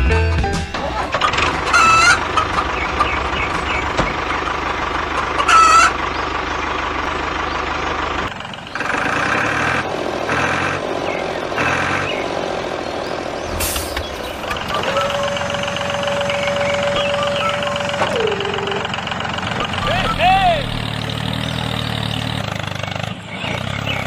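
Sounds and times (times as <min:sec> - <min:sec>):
low motor hum: 0:00.5 - 0:24.0
short warbling calls: 0:01.1 - 0:07.7, 0:12.9 - 0:21.7
repeated electronic beeps: 0:13.0 - 0:21.0.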